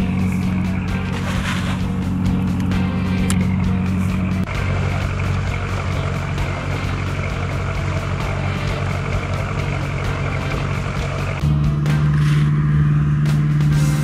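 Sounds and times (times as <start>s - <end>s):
boat engine running: 0.0s - 14.0s.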